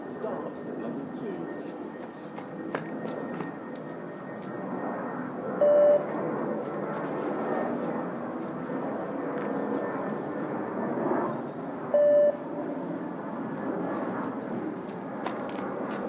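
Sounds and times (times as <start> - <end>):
short steady bleep: 5.6 - 6.0, 11.9 - 12.4.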